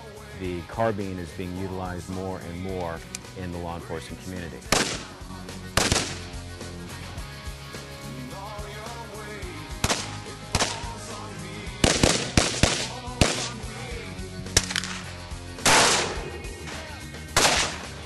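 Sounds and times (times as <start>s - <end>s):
background music: 0.0s - 18.0s
gunshots: 4.7s - 6.4s, 9.8s - 11.1s, 11.8s - 13.8s, 14.5s - 18.0s.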